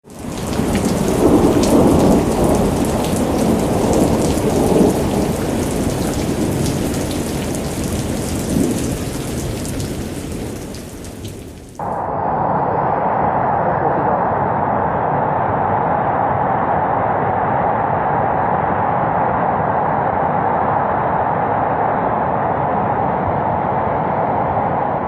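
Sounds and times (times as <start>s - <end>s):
heavy rain: 0.0s - 12.1s
thunder: 0.1s - 12.1s.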